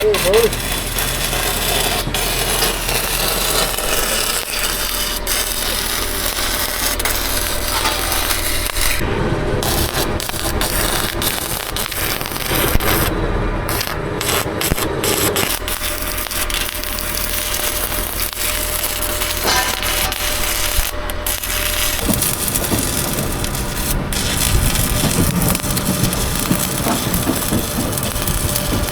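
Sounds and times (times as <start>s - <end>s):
welding arc crackling: 0.0s - 13.1s, 13.7s - 28.9s.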